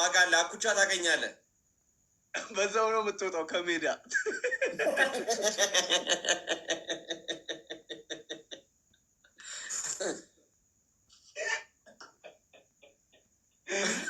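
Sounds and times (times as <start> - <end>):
person laughing hard: 4.1 - 8.6, 11.4 - 14.0.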